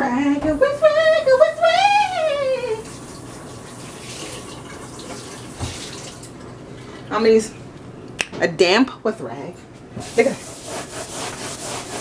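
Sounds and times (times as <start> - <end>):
woman's wavering voice: 0.0 - 2.9
kitchen faucet running: 0.0 - 6.5.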